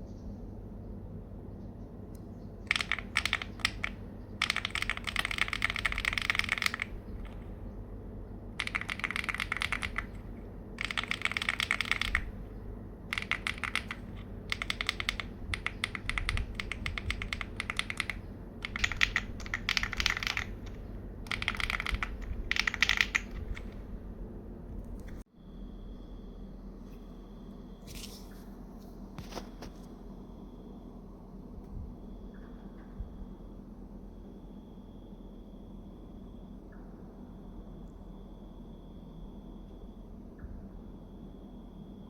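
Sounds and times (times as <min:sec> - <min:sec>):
mechanical keyboard key clacks: 0:02.7 - 0:07.5, 0:08.6 - 0:12.4, 0:13.1 - 0:23.8.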